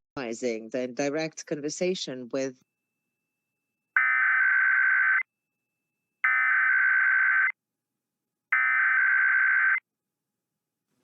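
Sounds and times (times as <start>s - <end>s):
buzzy digital data tones: 6.3s - 7.5s.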